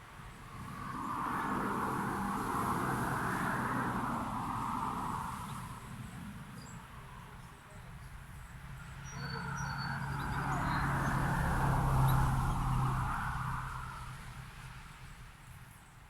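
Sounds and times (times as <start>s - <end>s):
vehicle passing by: 9.2s - 14.9s.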